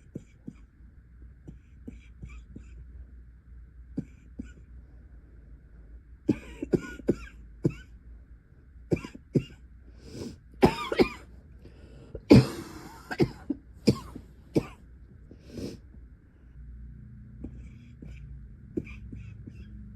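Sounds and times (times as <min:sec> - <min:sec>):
woman coughing: 0:06.3 - 0:07.9, 0:10.6 - 0:11.3, 0:12.2 - 0:14.8, 0:17.4 - 0:19.7.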